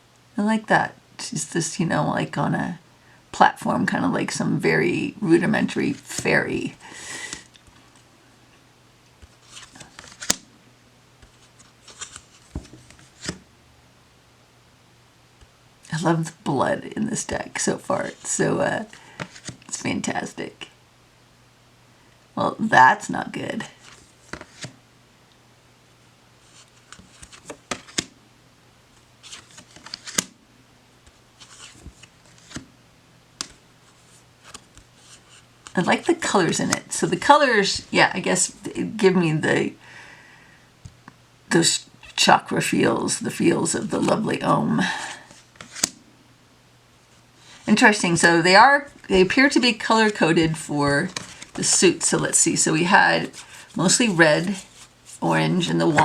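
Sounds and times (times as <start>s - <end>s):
cards rustling and snapping: 9.2s - 10.5s, 11.2s - 13.4s, 19.1s - 19.7s, 23.8s - 24.8s, 26.5s - 28.1s, 29.2s - 30.4s, 31.1s - 32.7s, 33.4s - 35.8s, 45.4s - 46.0s, 50.1s - 51.8s.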